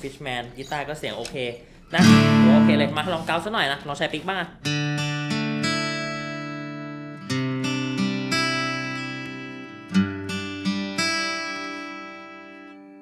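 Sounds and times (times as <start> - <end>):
acoustic guitar picked chords: 2.0 - 3.4, 4.6 - 13.0.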